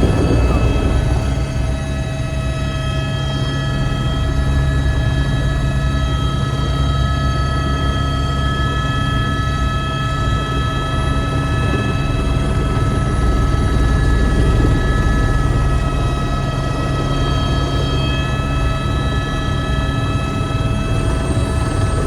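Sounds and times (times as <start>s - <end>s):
helicopter rotor drone: 0.0s - 22.0s
helicopter turbine whine: 0.0s - 22.0s.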